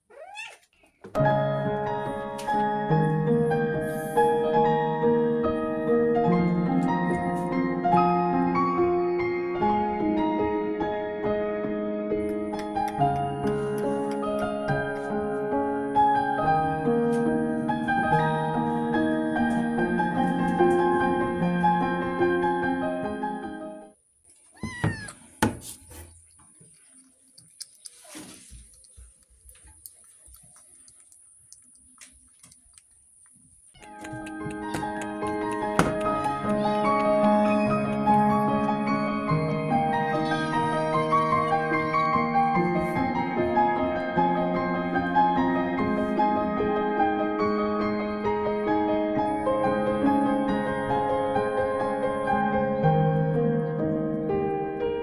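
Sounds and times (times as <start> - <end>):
cat meow: 0.0 - 0.7, 24.5 - 25.3
gentle piano music: 1.2 - 24.0, 33.8 - 55.0.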